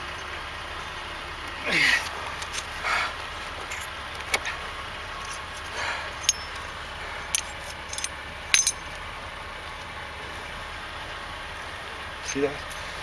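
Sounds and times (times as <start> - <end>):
metal tools clicking and clinking: 5.2 - 9.0.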